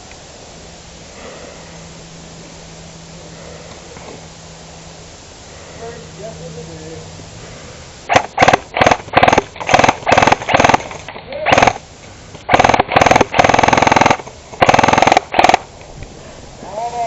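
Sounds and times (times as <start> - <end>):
airsoft gun full-auto bursts: 8.1 - 11.8, 12.5 - 15.7.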